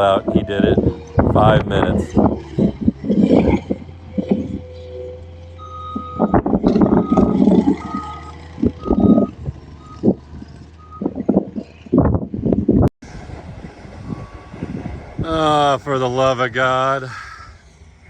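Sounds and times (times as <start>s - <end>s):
engine drone: 0.0s - 18.0s
reversing alarm beeps: 0.2s - 10.2s, 10.8s - 11.3s.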